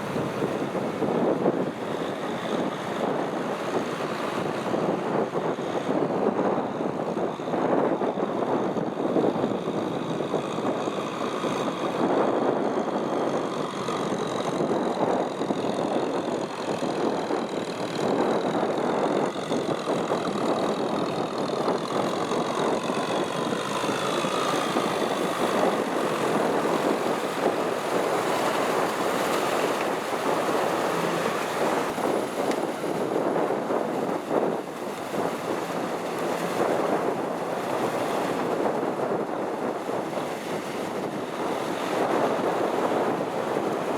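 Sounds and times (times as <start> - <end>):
constant rushing noise: 0.0 - 43.9
tractor diesel engine running: 9.4 - 43.9.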